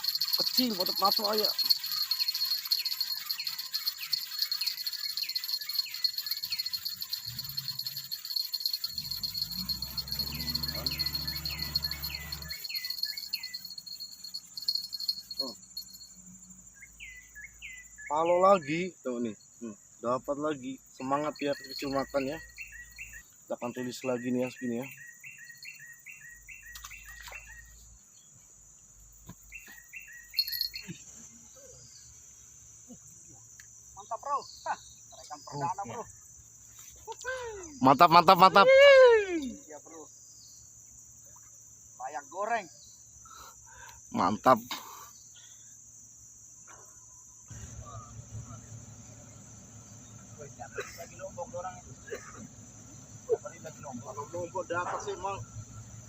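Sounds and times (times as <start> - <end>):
sharp bird chirp: 0.0 - 16.1, 21.0 - 27.9, 29.5 - 31.0
insect chorus buzzing: 0.0 - 56.0.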